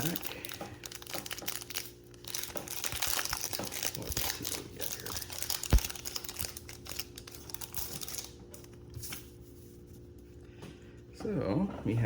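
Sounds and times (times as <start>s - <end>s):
foil wrapper crinkling: 0.0s - 9.4s.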